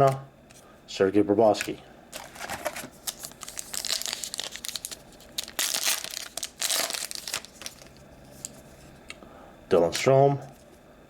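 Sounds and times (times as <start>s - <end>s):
plastic wrapper tearing and crinkling: 2.2s - 8.5s.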